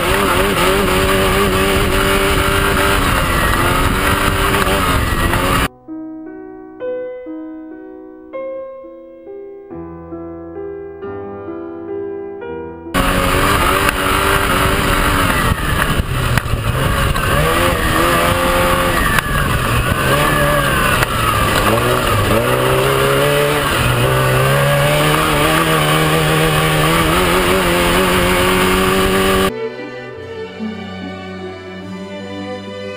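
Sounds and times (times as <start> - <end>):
steady rushing noise: 0.0 - 5.7, 13.0 - 29.6
truck engine revving high: 0.0 - 5.7, 13.0 - 29.5
piano passage: 29.5 - 32.9.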